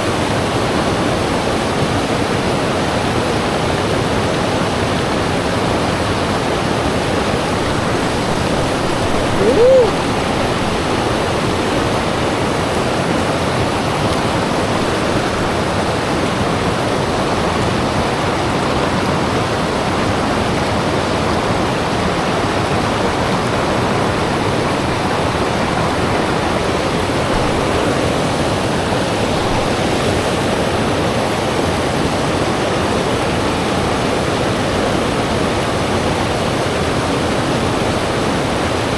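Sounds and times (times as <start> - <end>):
flowing river water: 0.0 - 38.9
short rising and falling tone: 9.2 - 10.4.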